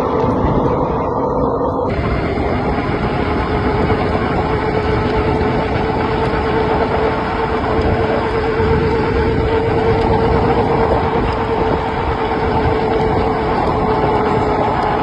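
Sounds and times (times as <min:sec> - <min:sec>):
electric motor whine: 0:00.0 - 0:15.0
wind rushing over microphone: 0:00.0 - 0:15.0.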